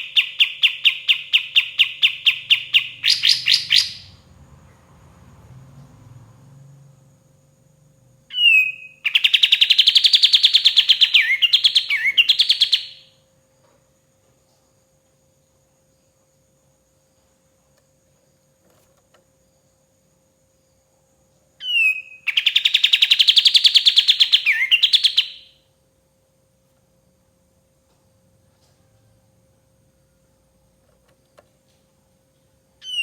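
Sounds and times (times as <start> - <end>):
songbird trilling song: 0.0 - 4.2, 8.3 - 13.2, 21.6 - 25.6, 32.8 - 33.0.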